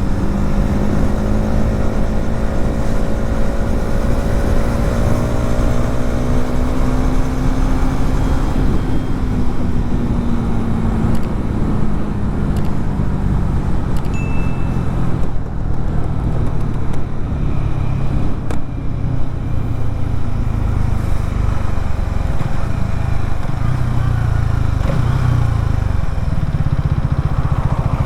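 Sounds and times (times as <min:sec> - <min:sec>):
motorcycle engine cruising: 0:00.0 - 0:28.0.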